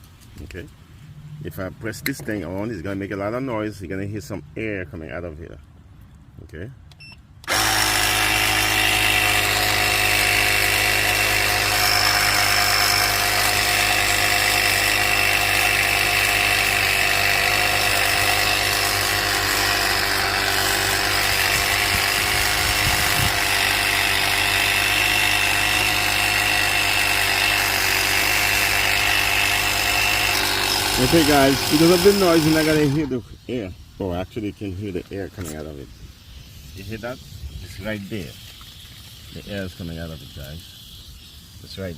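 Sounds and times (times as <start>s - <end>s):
air compressor running: 7.4s - 33.1s.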